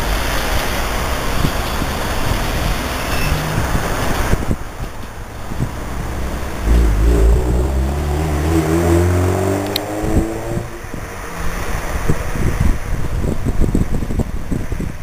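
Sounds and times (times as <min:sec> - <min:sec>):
wind noise on microphone: 0:00.0 - 0:15.0
low rumble: 0:02.2 - 0:11.6
vehicle motor accelerating: 0:05.2 - 0:11.1.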